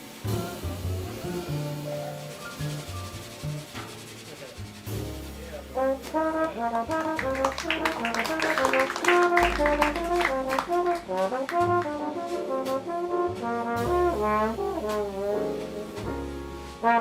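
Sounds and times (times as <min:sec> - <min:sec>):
brass horn melody: 0:00.0 - 0:03.8, 0:04.9 - 0:17.0
drums with cymbals: 0:00.0 - 0:06.9, 0:11.6 - 0:17.0
bass notes: 0:00.2 - 0:17.0.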